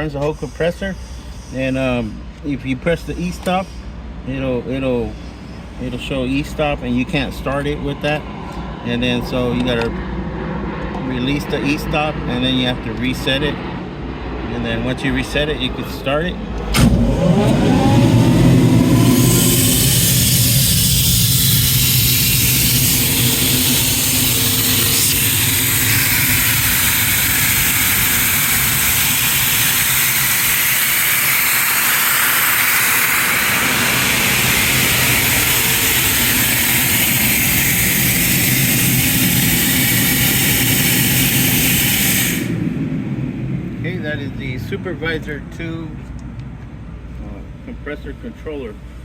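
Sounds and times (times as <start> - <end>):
loud air hiss: 0.0 - 7.6, 16.7 - 43.3
air compressor drone: 0.0 - 47.9.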